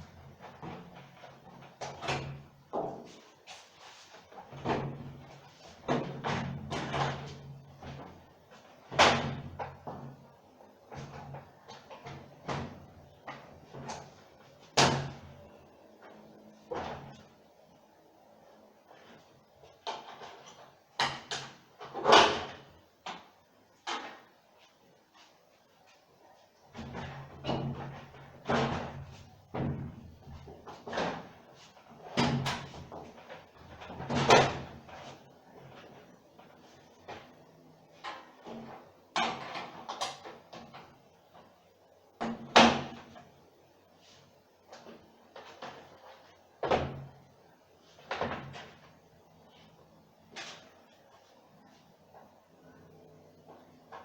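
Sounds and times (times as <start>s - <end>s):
knocks and clunks of hard parts: 26.7s - 36.0s.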